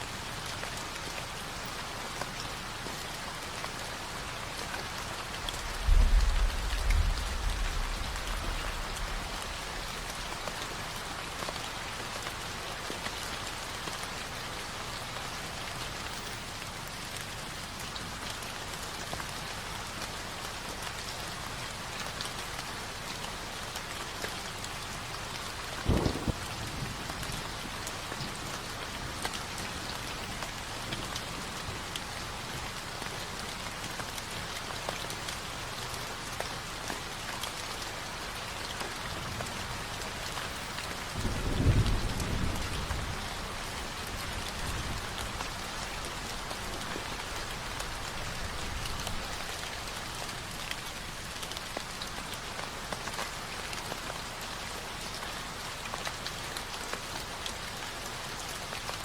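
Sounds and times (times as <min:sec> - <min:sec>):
steady rain: 0:00.0 - 0:59.0
thunder rumbling: 0:05.4 - 0:10.5, 0:25.8 - 0:27.8, 0:41.2 - 0:49.5.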